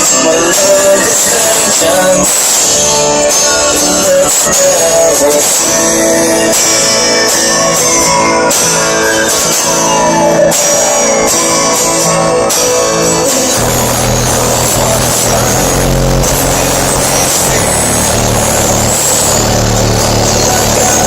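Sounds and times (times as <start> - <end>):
song with guitar on car stereo: 0.0 - 21.0.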